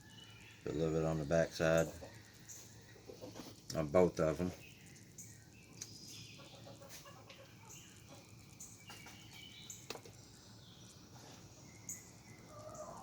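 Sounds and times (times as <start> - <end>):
chicken clucking: 3.0 - 3.5, 6.4 - 8.3.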